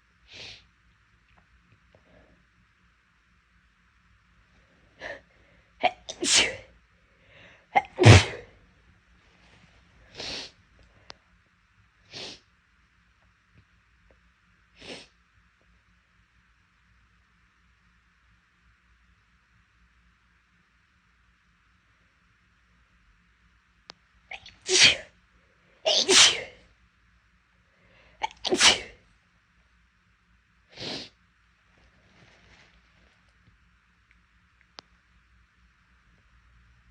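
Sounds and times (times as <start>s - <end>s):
woman sneezing loudly: 5.8s - 6.7s, 7.8s - 8.5s, 24.3s - 25.1s, 25.9s - 26.6s, 28.2s - 29.0s.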